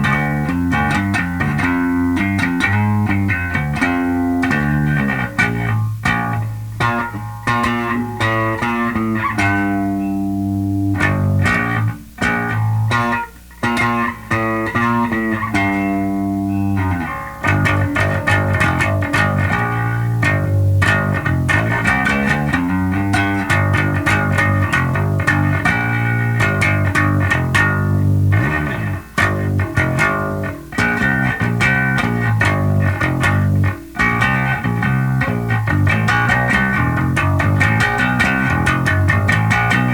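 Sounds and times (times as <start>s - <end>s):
electric bass riffs: 0.0s - 39.9s
steady amp feedback tone: 0.0s - 39.9s.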